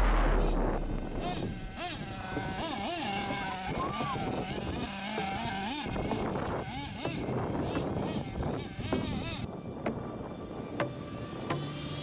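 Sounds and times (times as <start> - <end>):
small engine revving: 0.3 - 9.5.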